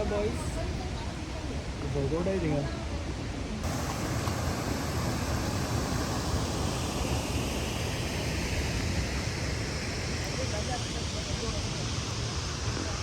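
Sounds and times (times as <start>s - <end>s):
waterfall roaring: 3.5s - 13.0s.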